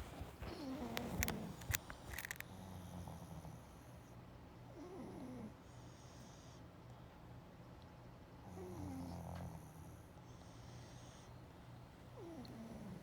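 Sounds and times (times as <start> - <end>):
dog snoring: 0.0 - 1.7, 2.5 - 4.0, 4.7 - 6.6, 8.4 - 11.3, 12.2 - 13.0.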